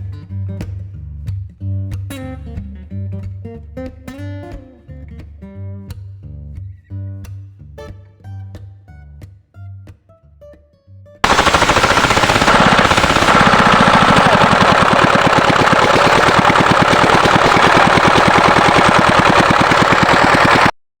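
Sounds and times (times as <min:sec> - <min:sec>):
diesel engine running: 0:11.2 - 0:20.8.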